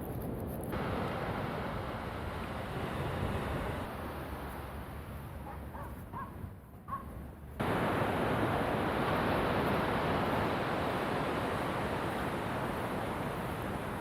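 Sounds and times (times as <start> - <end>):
wind: 0.0 - 14.0
surf: 7.6 - 14.0.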